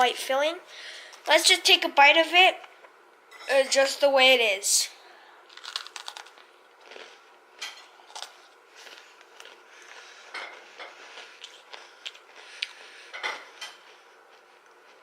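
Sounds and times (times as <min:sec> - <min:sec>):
cookie crunching while chewing: 0:05.4 - 0:15.0.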